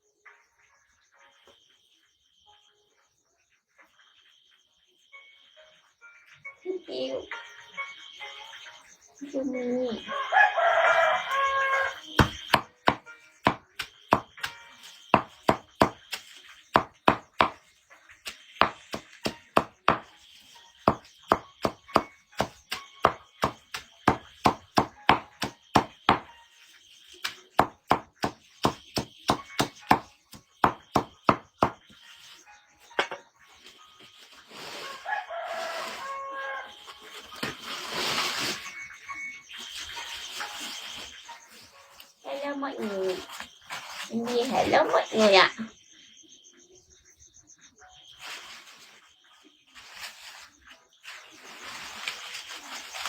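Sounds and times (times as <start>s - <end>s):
rooster crowing: 10.0s - 12.2s, 34.8s - 37.0s
blade chopping on a block: 12.2s - 14.6s, 15.2s - 17.6s, 18.6s - 20.1s, 20.9s - 26.3s, 27.6s - 31.9s.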